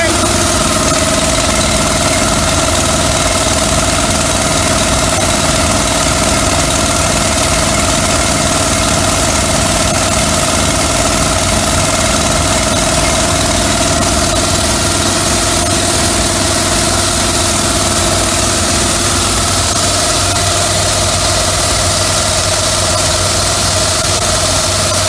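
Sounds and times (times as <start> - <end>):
pressure washer engine drone: 0.0 - 25.0.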